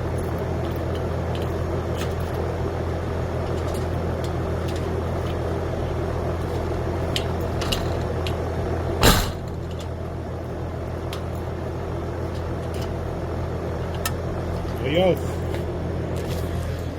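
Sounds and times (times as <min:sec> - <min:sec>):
low mechanical hum: 0:00.0 - 0:16.9.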